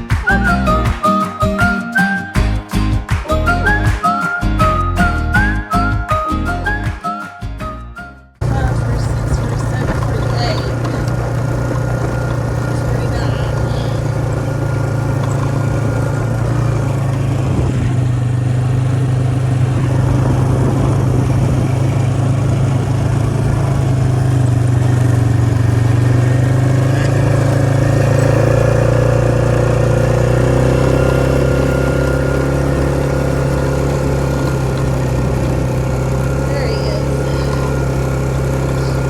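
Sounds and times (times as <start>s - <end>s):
vehicle engine droning: 8.4s - 39.0s.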